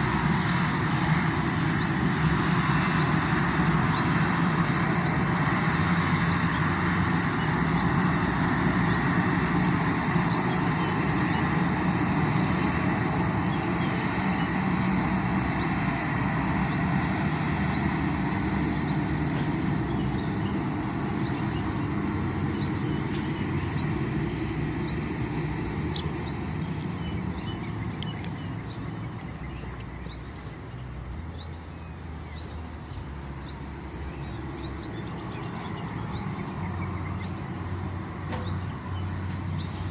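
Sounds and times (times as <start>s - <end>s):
jet engines rumbling: 0.0s - 39.9s
bird chirping: 3.9s - 4.2s, 10.2s - 11.7s, 12.3s - 12.8s, 13.5s - 14.6s, 17.7s - 39.9s.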